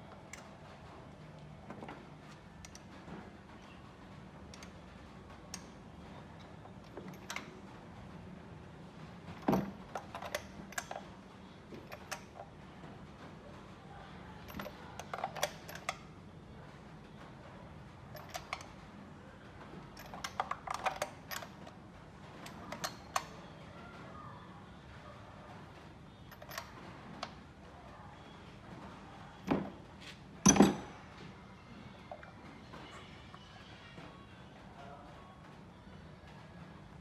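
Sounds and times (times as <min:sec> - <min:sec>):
metal clicks of hand tools: 0:09.5 - 0:11.0, 0:14.5 - 0:16.0.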